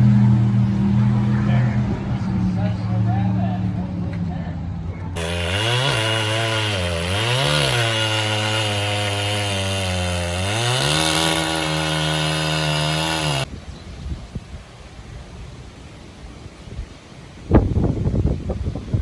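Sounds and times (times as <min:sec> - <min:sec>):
two-stroke chainsaw revving: 0:05.2 - 0:13.5.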